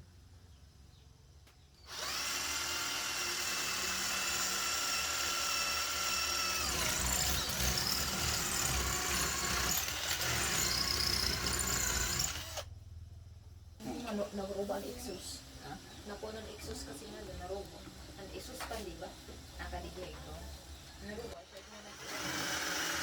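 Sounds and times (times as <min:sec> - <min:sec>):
electric drill whining: 0:01.9 - 0:12.7, 0:21.5 - 0:23.0.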